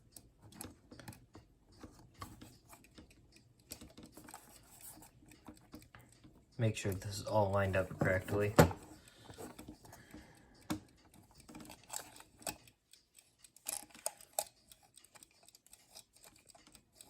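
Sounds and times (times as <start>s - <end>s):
small plastic clicks and taps: 7.9s - 17.0s.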